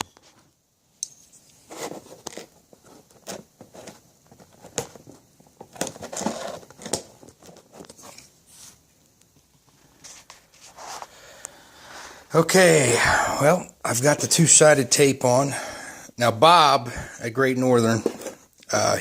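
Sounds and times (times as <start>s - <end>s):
tape rustling and tearing: 1.6s - 8.8s.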